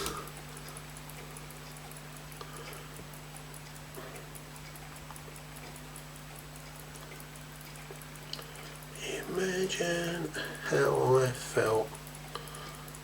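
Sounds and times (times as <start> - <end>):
clock ticking: 0.0 - 13.0
steady low hum: 0.0 - 13.0.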